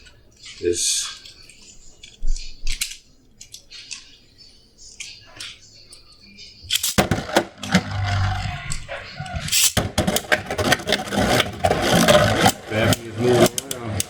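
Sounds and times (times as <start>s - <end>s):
plastic clicks: 1.0s - 4.2s.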